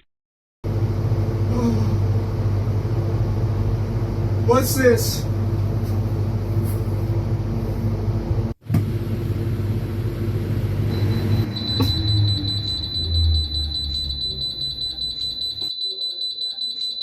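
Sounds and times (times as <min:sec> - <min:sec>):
refrigeration unit humming: 0:00.7 - 0:17.0
high-pitched pulsing alarm beep: 0:10.9 - 0:17.0.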